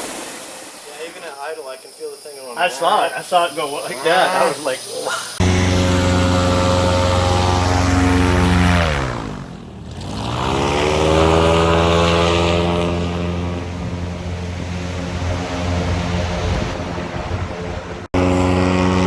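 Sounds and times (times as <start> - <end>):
airboat engine and propeller running: 5.3 - 19.0.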